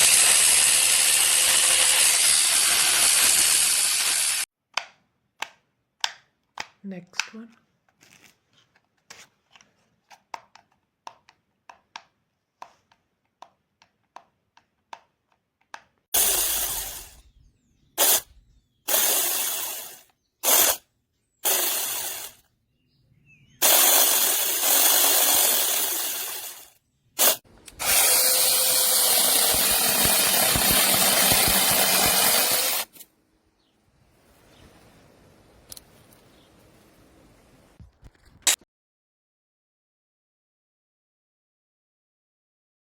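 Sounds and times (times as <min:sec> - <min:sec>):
mini chainsaw running: 0:00.0 - 0:04.4, 0:16.2 - 0:17.2, 0:18.9 - 0:20.8, 0:21.4 - 0:22.4, 0:23.6 - 0:32.9.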